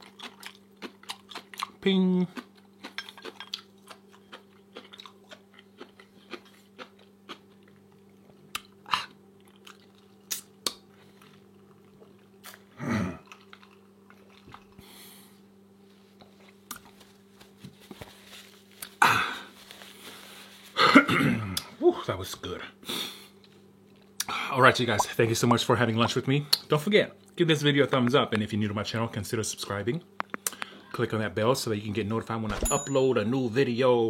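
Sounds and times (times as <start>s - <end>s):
person chewing food: 0.0s - 15.1s.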